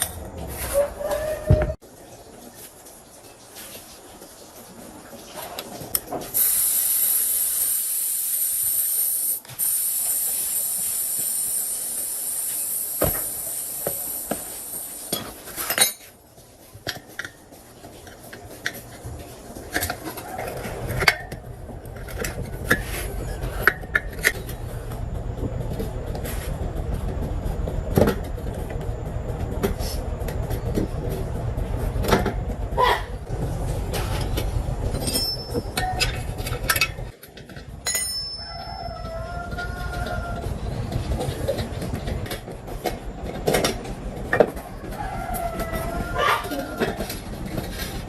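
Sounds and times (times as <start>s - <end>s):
loud hiss of air spray: 6.4s - 15.2s.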